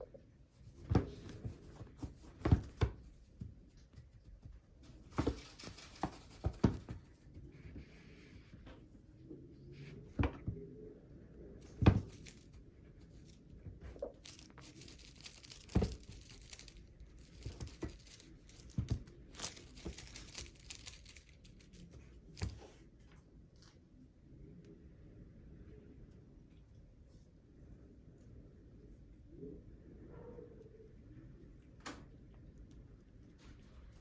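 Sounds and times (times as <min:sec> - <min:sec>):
rustling and crinkling: 0:00.0 - 0:09.2, 0:11.6 - 0:23.8.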